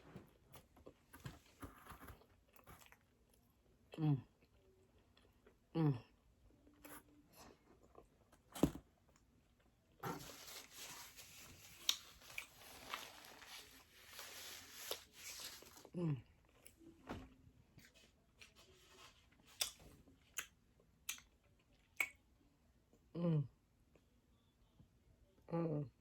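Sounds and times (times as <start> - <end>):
crunching and tearing food: 10.1 - 16.7
mouth clicks and smacks: 21.9 - 22.2.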